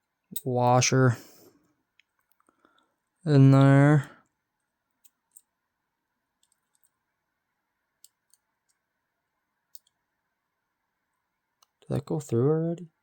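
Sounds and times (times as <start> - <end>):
faint metal clicks and ticks: 1.9 - 5.6, 6.4 - 7.0, 9.7 - 10.0.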